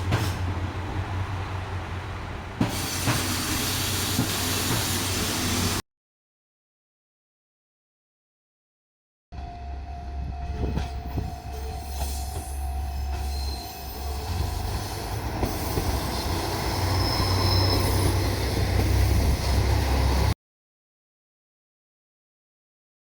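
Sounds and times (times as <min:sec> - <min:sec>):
diesel railcar engine rumble: 0:00.0 - 0:05.8, 0:09.4 - 0:20.4
high wheel squeals: 0:09.4 - 0:20.3.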